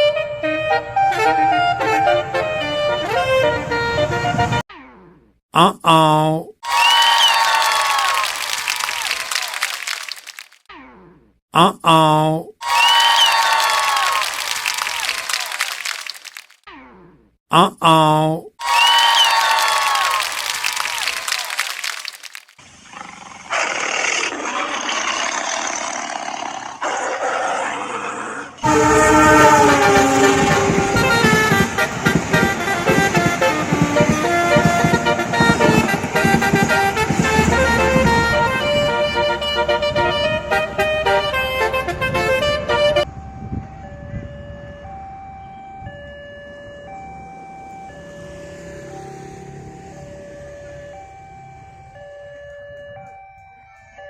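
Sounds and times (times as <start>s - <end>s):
two-tone siren: 28.6s - 54.0s.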